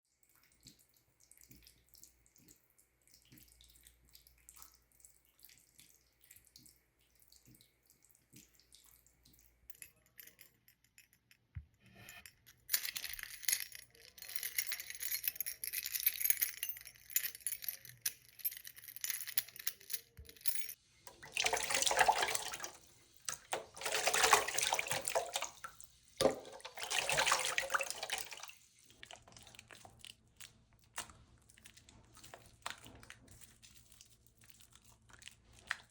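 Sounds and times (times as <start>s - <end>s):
water gushing: 21.1s - 22.9s, 23.5s - 28.5s
tap water running into sink: 21.1s - 28.6s.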